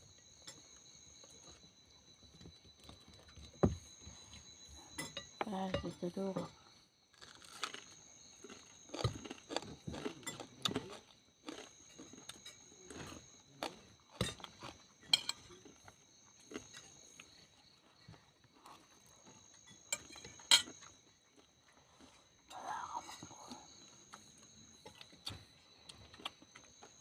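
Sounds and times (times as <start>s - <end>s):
utensils clinking on dishes: 4.9s - 6.2s, 14.2s - 15.5s.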